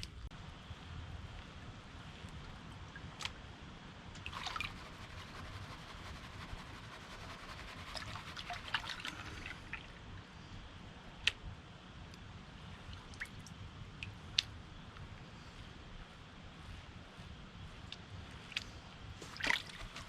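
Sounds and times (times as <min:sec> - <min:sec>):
small water splashes: 0:04.2 - 0:10.0, 0:19.2 - 0:20.0.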